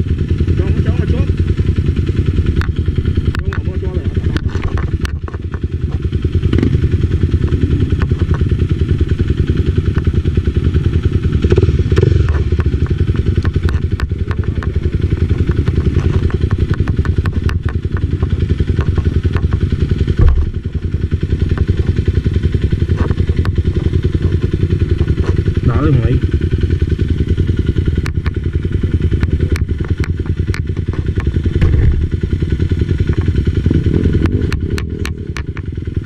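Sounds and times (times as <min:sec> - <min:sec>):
motorcycle engine rumble: 0:00.0 - 0:36.0
sharp clattering knocks: 0:12.2 - 0:21.9, 0:29.1 - 0:32.3
heavy thump: 0:20.2 - 0:20.7, 0:31.6 - 0:32.1.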